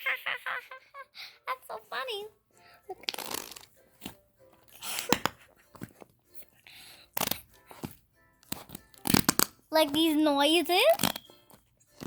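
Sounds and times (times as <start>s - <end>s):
slime squelching: 5.0s - 12.0s.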